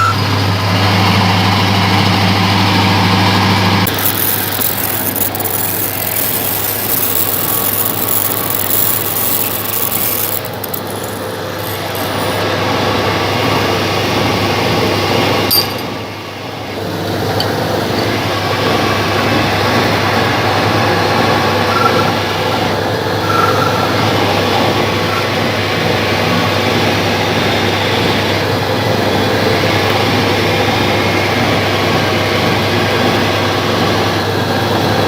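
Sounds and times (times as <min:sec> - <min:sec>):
lathe motor hum: 0:03.8 - 0:15.2
scratchy high-pitched machining noise: 0:03.9 - 0:12.6.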